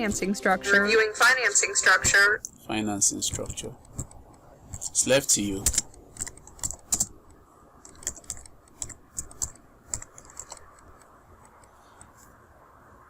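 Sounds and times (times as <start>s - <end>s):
computer keyboard typing: 3.3s - 12.1s.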